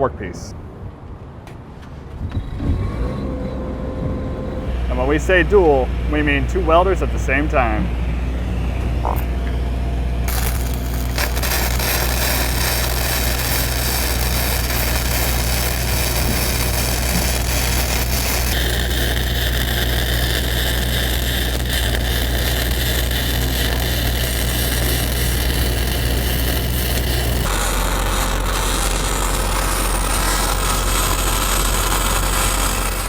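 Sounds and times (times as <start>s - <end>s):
diesel engine running: 3.5s - 33.0s
welding arc hiss and crackle: 10.3s - 33.0s.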